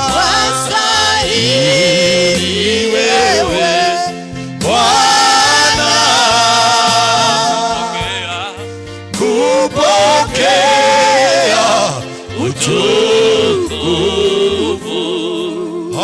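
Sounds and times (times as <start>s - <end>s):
sustained low bass notes: 0.0s - 15.8s.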